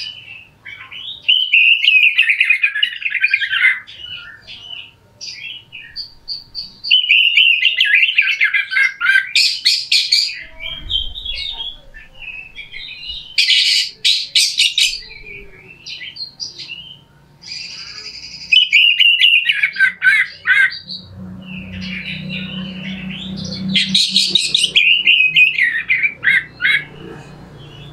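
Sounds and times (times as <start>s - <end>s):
faint low hum: 0.0s - 18.6s
bird singing: 0.0s - 27.9s.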